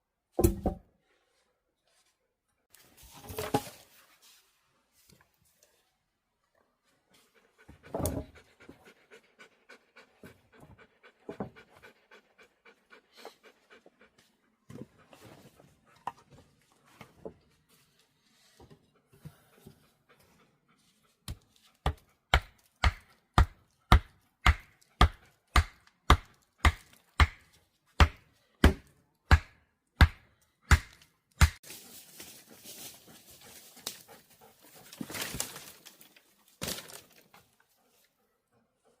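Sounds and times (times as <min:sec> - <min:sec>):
rustling and scraping: 0:01.2 - 0:05.8, 0:31.6 - 0:38.0
sharp chopping blows: 0:22.3 - 0:31.6.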